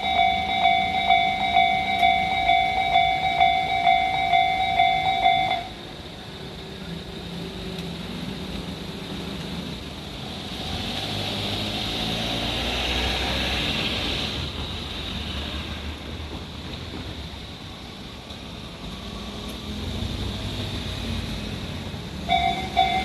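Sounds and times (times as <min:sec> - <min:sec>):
level crossing alarm bells: 0:00.0 - 0:05.8, 0:22.3 - 0:23.0.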